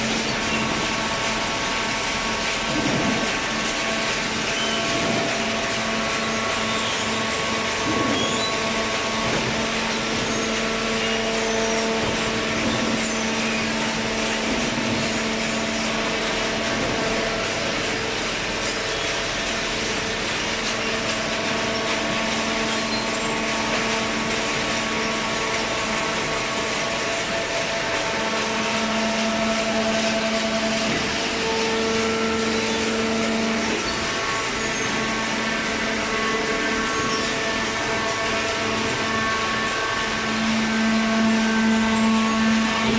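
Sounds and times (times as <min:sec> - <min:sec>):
baler machine hum: 0:00.0 - 0:42.9
hydraulic pump whine: 0:00.0 - 0:42.9.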